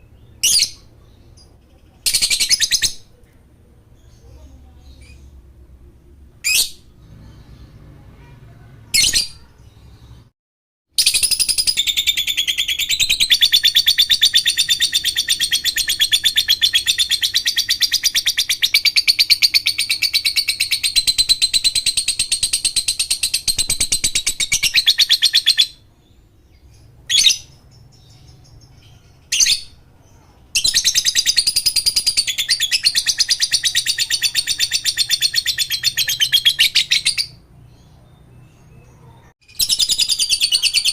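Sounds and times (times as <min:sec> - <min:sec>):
bird chirps: 0:00.0 - 0:05.5, 0:06.4 - 0:10.3, 0:11.0 - 0:40.9
bird trilling rapidly: 0:06.4 - 0:07.0, 0:11.0 - 0:25.8, 0:30.6 - 0:37.4.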